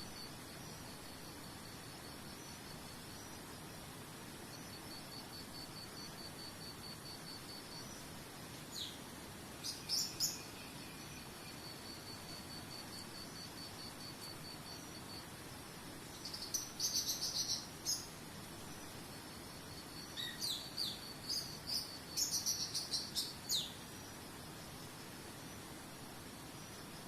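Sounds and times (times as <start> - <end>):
low background hiss: 0.0 - 27.0
insect pulsed high trill: 4.5 - 8.1, 9.6 - 24.8.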